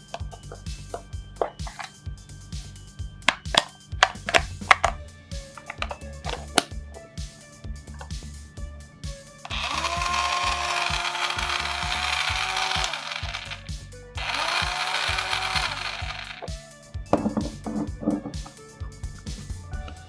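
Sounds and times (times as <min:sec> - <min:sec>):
background music: 0:00.0 - 0:20.0
toy appliance electronic motor whir: 0:09.5 - 0:16.6.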